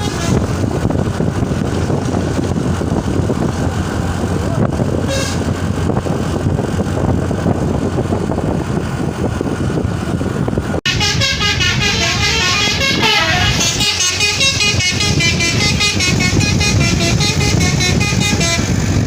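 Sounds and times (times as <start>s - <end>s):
multi-tone bus horn melody: 0.0s - 0.8s, 4.9s - 5.6s, 10.8s - 19.0s
bus engine and road noise: 0.0s - 19.0s.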